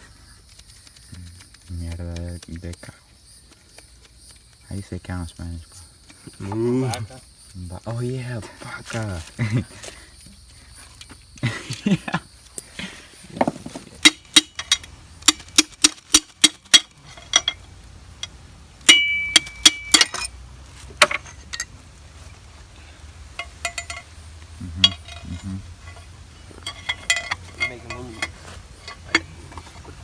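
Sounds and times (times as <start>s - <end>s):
tools clinking on metal engine parts: 13.4s - 17.6s, 18.2s - 20.4s, 21.0s - 21.8s, 23.4s - 24.1s, 24.7s - 30.0s.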